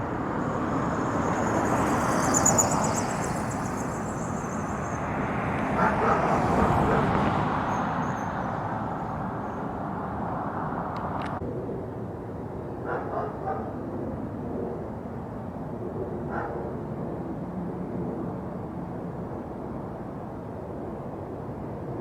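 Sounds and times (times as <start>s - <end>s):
passing traffic: 0.0s - 22.0s
dog barking: 5.8s - 7.1s, 12.8s - 13.8s, 16.3s - 16.8s.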